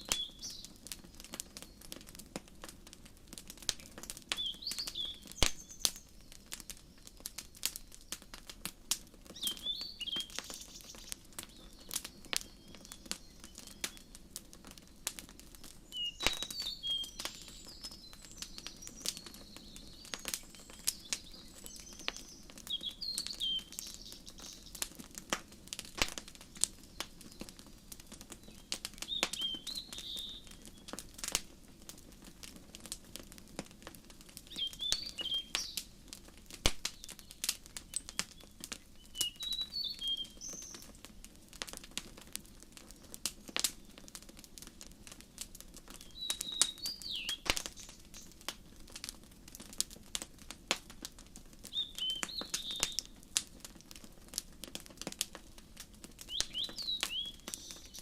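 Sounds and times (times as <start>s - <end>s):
songbird chirping: 0.0s - 1.9s, 4.3s - 8.2s, 9.3s - 14.2s, 15.6s - 24.9s, 26.8s - 31.0s, 34.5s - 35.9s, 36.8s - 40.9s, 45.9s - 48.3s, 51.7s - 53.1s, 56.3s - 58.0s
wood fire crackling and popping: 0.0s - 58.0s.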